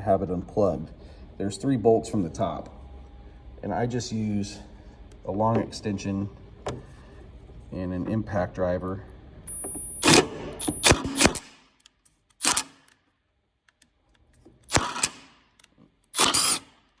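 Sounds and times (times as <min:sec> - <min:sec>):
impact driver hammering: 0:09.8 - 0:11.7, 0:14.7 - 0:15.4.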